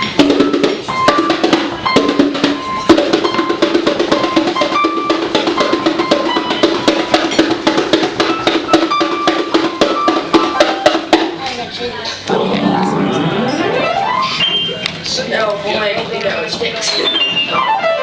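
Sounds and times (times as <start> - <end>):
children banging on bongos: 0.0 - 11.5
piano notes: 12.2 - 14.8.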